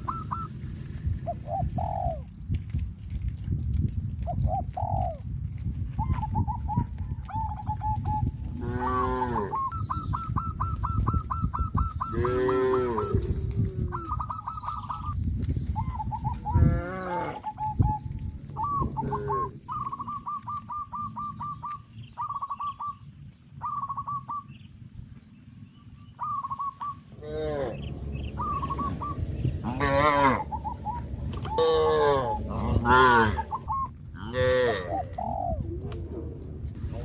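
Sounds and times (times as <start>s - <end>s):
cattle mooing: 8.6s - 9.6s, 27.1s - 29.0s, 29.6s - 30.6s, 31.2s - 33.5s, 34.2s - 35.1s.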